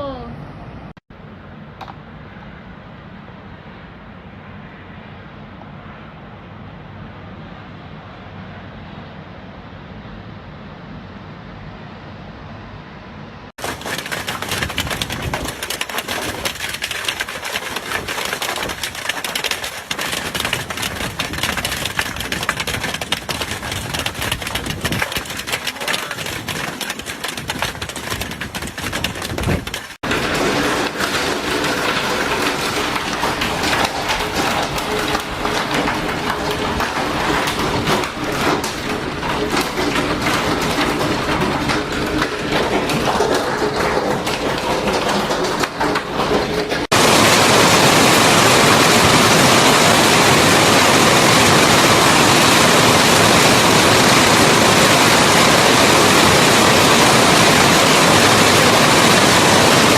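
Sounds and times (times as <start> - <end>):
hailstones clattering: 13.6 - 59.9.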